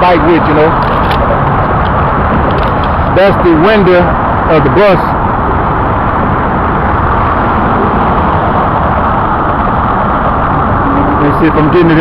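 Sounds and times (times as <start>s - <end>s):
traffic engine and road noise: 0.0s - 12.0s.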